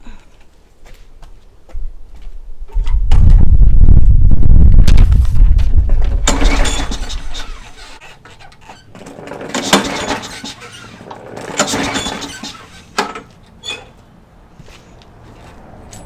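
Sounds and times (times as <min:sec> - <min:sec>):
lawnmower engine: 0:05.2 - 0:14.6.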